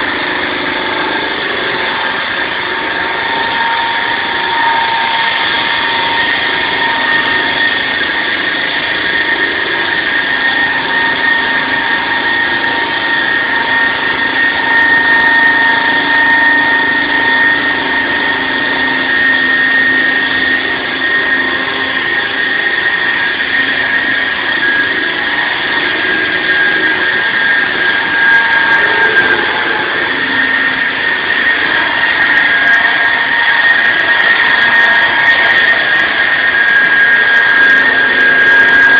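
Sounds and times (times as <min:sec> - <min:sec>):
concrete saw running: 0:00.0 - 0:38.9.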